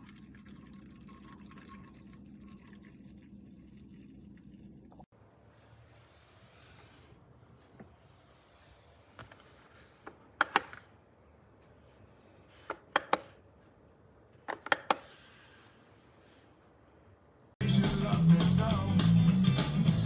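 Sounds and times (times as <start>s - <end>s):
loud rock music: 17.6s - 20.0s.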